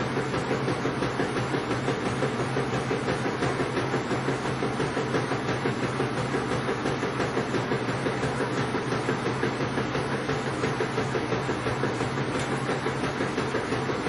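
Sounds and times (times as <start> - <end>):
washing machine spinning: 0.0 - 14.0.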